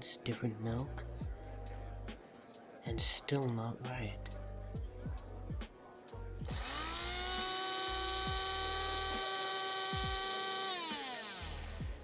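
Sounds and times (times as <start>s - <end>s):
coffee grinder motor: 6.5s - 12.0s.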